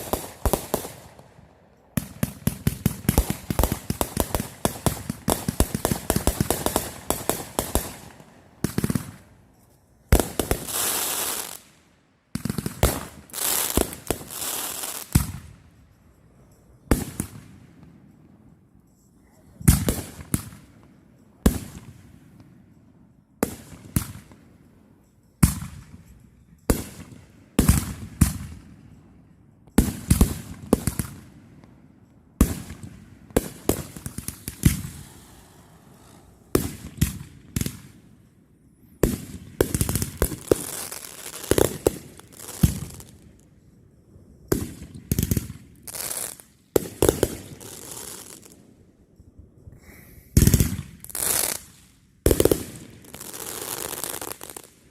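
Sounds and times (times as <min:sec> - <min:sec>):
fireworks bangs and crackling: 0:00.0 - 0:01.4, 0:02.0 - 0:09.4, 0:10.1 - 0:15.6, 0:16.9 - 0:17.9, 0:19.6 - 0:22.1, 0:23.4 - 0:24.4, 0:25.4 - 0:28.8, 0:29.7 - 0:31.4, 0:32.4 - 0:38.0, 0:39.0 - 0:43.2, 0:44.5 - 0:48.6, 0:50.4 - 0:54.9.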